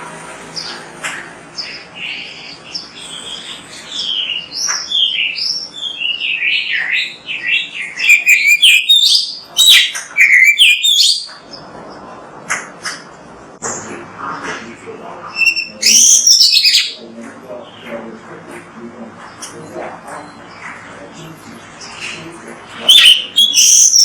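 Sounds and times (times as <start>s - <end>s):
bird singing whistled phrases: 3.0s - 11.3s, 15.4s - 17.0s, 22.9s - 24.0s.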